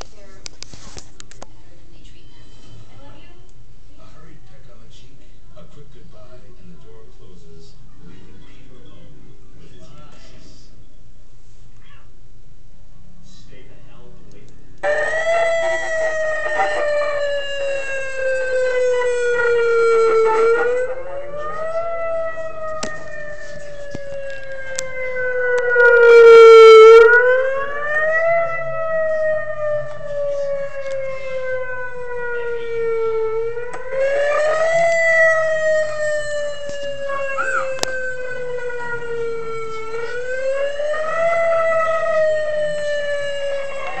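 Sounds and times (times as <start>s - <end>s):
siren wail through small speaker: 14.8s - 44.0s.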